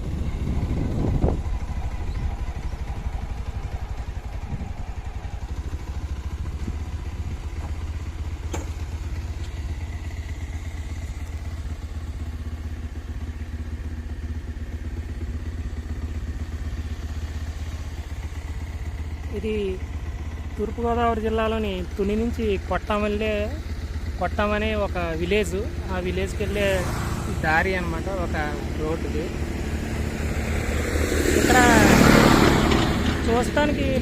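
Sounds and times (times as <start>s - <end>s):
vehicle engine rumbling: 0.0s - 34.0s
thump: 8.5s - 8.8s.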